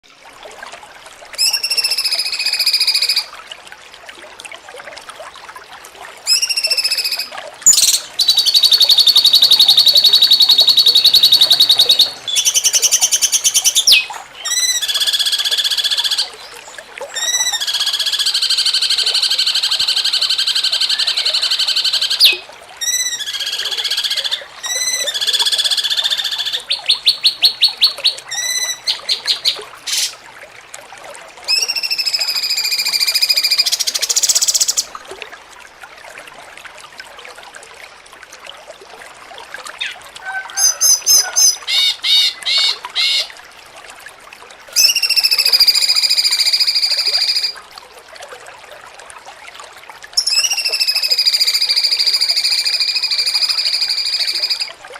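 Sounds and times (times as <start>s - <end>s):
bird singing rapid trills: 6.3s - 16.2s.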